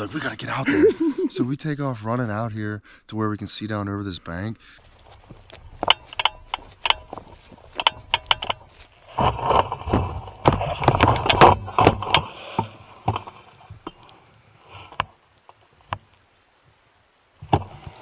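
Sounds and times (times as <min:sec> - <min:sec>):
clothing and gear rustling: 0:04.8 - 0:15.9.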